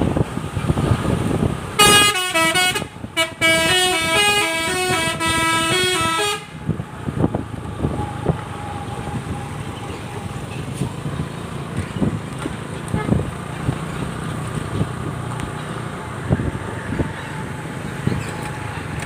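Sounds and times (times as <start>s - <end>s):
vehicle engine and road noise: 0.0s - 19.0s
multi-tone horn melody: 1.8s - 6.6s.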